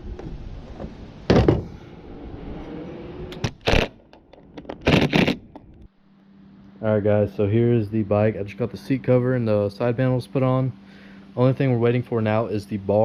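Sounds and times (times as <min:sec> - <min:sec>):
loud knocks: 0:01.3 - 0:01.8.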